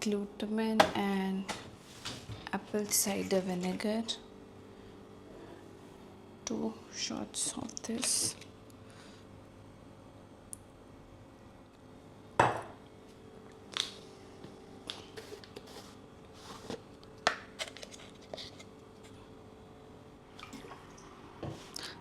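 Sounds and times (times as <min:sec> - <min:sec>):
glassware clinking: 0:12.4 - 0:12.8
glassware knock: 0:12.4 - 0:12.8.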